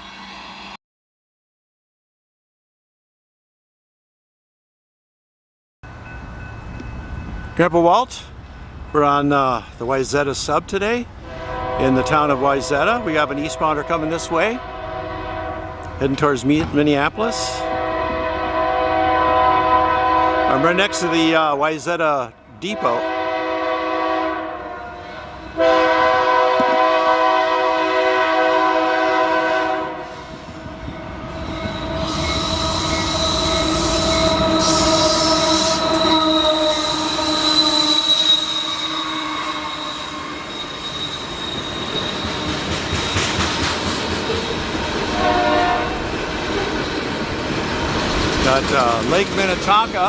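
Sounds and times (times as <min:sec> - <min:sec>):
train cars rumbling past: 0:05.8 - 0:50.0
locomotive air horn blast: 0:11.2 - 0:16.0, 0:17.3 - 0:21.4, 0:22.6 - 0:40.6, 0:45.1 - 0:46.0
high-pitched wheel squeal: 0:30.0 - 0:43.4.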